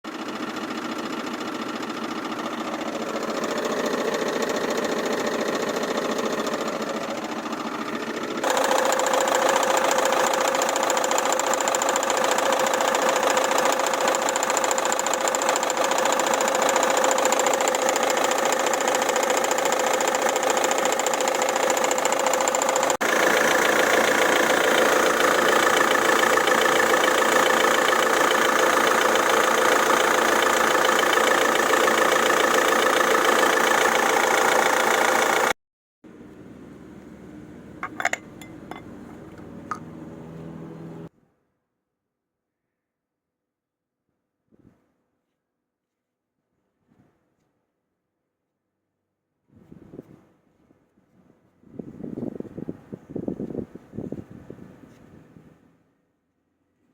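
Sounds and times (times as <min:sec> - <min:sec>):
car engine knocking: 0:00.1 - 0:35.5.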